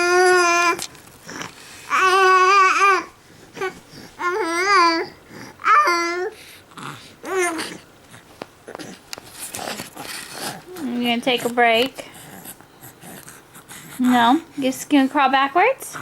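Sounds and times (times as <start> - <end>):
baby making long vocal calls: 1.9 - 6.4.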